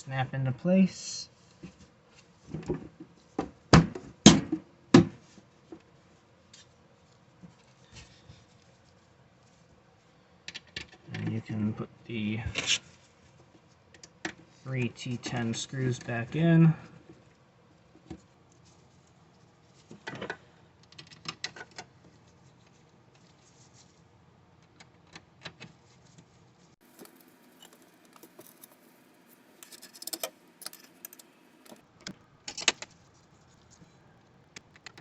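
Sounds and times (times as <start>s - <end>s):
small metal screws clicking: 29.6s - 31.3s.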